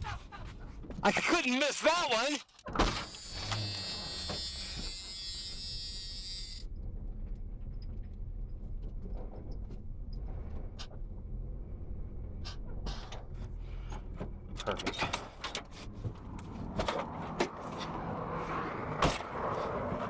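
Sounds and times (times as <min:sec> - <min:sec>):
power window motor whine: 0:02.9 - 0:06.6
low steady rumble: 0:05.4 - 0:14.6.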